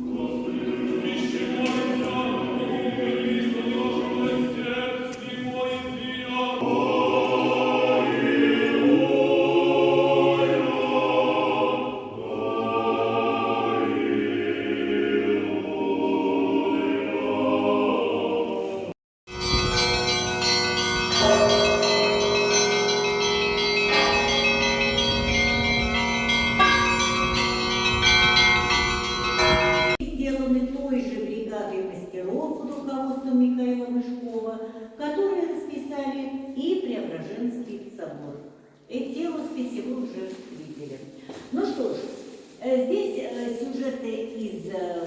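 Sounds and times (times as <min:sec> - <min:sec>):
male choir chanting: 0:00.0 - 0:19.0
church bells ringing: 0:19.3 - 0:30.1.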